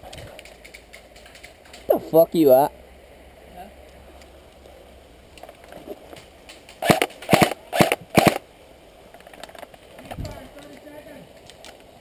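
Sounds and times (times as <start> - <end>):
airsoft guns firing bursts: 6.8 - 8.4.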